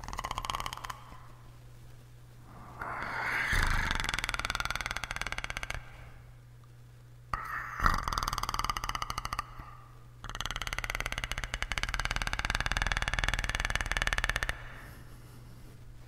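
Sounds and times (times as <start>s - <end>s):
man making clicking rattle growl: 0.0s - 1.4s, 2.8s - 6.2s, 7.3s - 14.9s.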